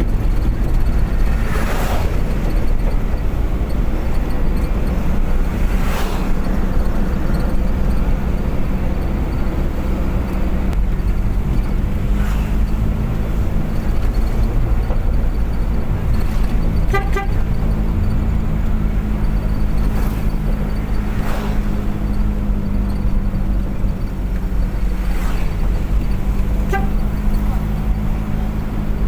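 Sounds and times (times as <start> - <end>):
passing traffic swishes: 0.0 - 29.0
vehicle driving at speed: 0.0 - 29.0
car horn toot: 16.8 - 17.8, 26.5 - 27.9.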